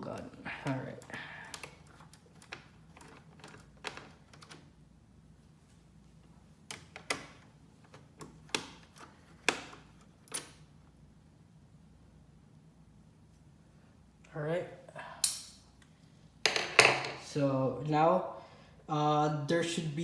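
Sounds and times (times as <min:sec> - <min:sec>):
laptop parts clicking: 0:00.9 - 0:04.7.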